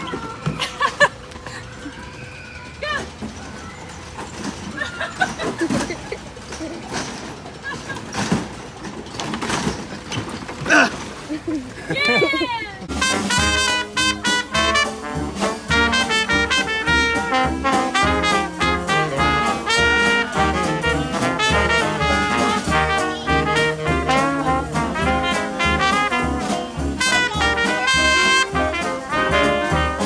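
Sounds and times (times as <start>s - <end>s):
swing jazz with brass: 12.9s - 30.0s.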